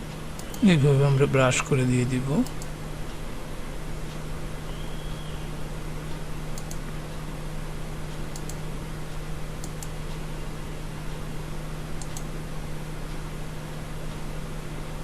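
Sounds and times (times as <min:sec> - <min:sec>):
low electrical hum: 0:00.0 - 0:15.0
microphone hiss: 0:00.0 - 0:15.0
computer mouse clicks: 0:00.4 - 0:00.6, 0:02.4 - 0:02.7, 0:06.5 - 0:06.8, 0:08.3 - 0:08.6, 0:09.6 - 0:09.9, 0:12.0 - 0:12.3.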